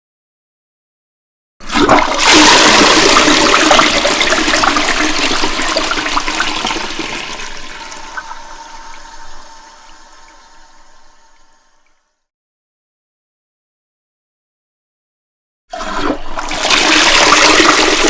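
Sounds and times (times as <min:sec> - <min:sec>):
toilet flushing: 0:01.6 - 0:12.0, 0:15.7 - 0:18.0
thin steady tone: 0:02.3 - 0:12.2.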